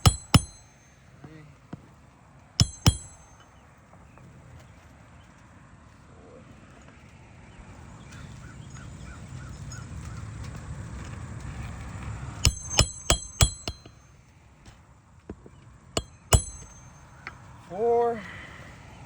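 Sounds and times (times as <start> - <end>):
hammer striking roofing nail: 0.0 - 0.8, 2.6 - 3.4, 12.4 - 14.0, 16.0 - 17.0.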